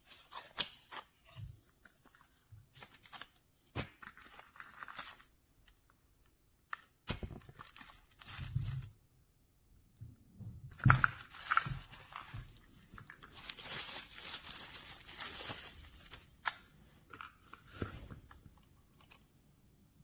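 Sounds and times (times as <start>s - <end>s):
rustling and crinkling: 6.7s - 9.0s, 10.7s - 19.3s.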